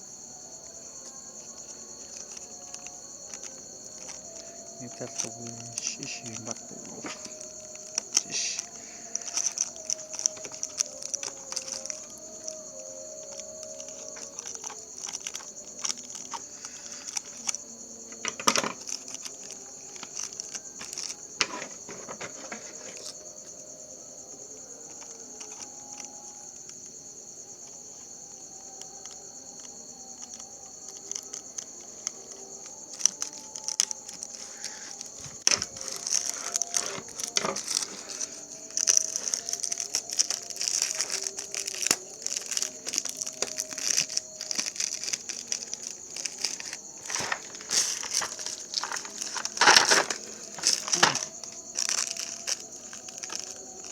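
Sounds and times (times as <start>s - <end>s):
high-pitched insect chirr: 0.0s - 53.9s
package being opened: 2.1s - 12.6s, 32.9s - 53.9s.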